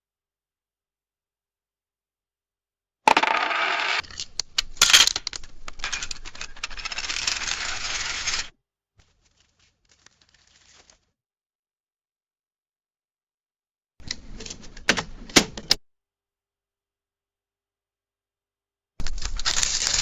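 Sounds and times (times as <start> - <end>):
coins clinking and rattling: 3.1 - 8.5.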